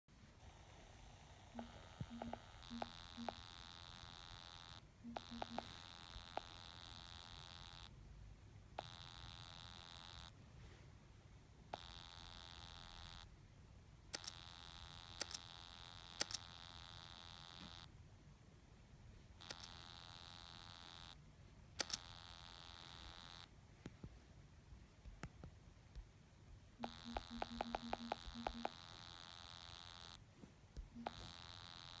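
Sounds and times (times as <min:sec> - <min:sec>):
high-pitched buzzing hum: 0:00.4 - 0:08.0, 0:08.8 - 0:10.4, 0:19.4 - 0:21.2, 0:26.8 - 0:30.2, 0:30.9 - 0:32.0
high-pitched electrical whine: 0:00.5 - 0:07.9, 0:26.8 - 0:30.2
quick clicks: 0:14.1 - 0:14.4, 0:15.2 - 0:15.5, 0:16.2 - 0:16.5, 0:21.8 - 0:22.1.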